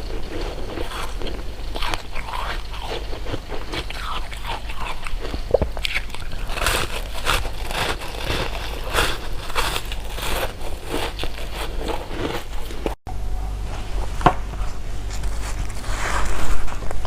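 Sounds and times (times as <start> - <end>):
chewing and crunching candy: 0.0 - 13.0
low hum: 0.0 - 17.0.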